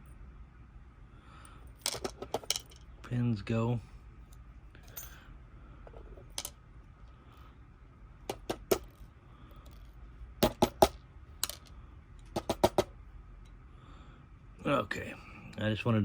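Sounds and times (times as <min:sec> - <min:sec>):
small metal pins falling: 0:01.8 - 0:02.9, 0:05.9 - 0:06.6, 0:08.3 - 0:09.0, 0:09.6 - 0:12.9.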